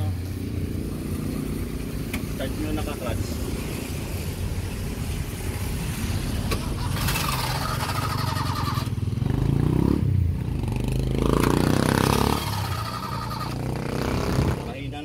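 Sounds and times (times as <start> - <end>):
starter cranking engine: 6.5 - 9.0.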